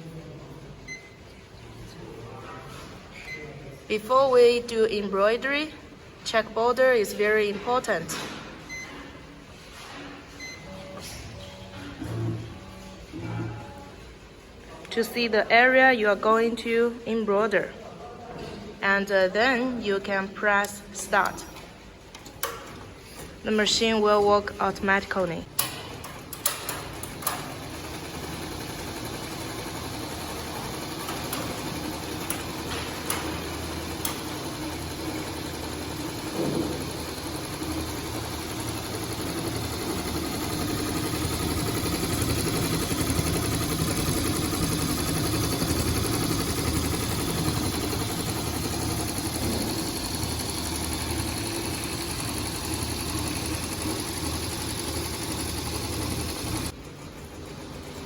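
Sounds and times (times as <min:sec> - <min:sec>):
sharp machine clicks: 0:25.5 - 0:56.7
embroidery machine stitching: 0:25.6 - 0:56.8.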